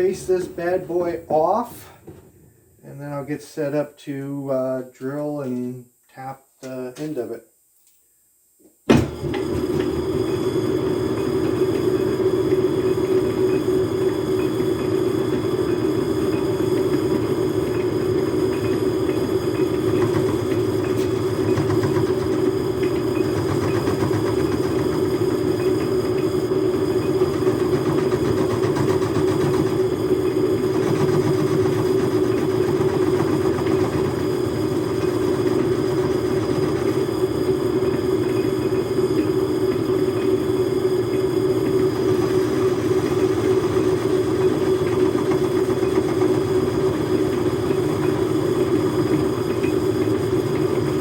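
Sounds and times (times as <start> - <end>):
metal lathe humming: 9.1 - 51.0.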